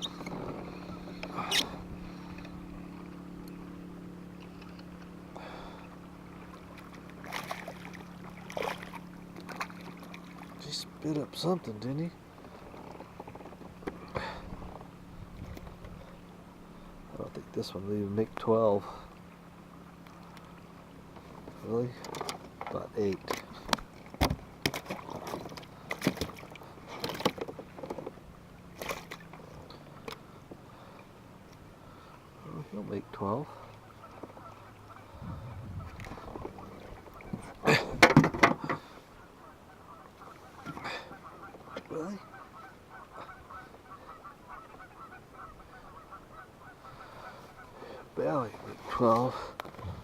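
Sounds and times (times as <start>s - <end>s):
knocks and clatter in a kayak: 0.0s - 3.3s, 6.4s - 10.9s, 12.2s - 16.2s, 20.0s - 30.7s, 33.2s - 39.0s, 39.9s - 46.1s, 48.9s - 50.0s
distant geese honking: 0.0s - 10.6s, 29.4s - 37.8s, 38.6s - 50.0s.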